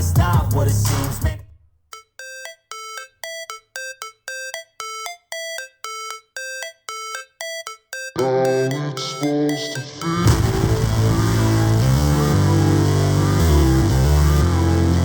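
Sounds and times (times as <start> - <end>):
rap music from speaker: 0.0 - 1.4, 8.1 - 15.0.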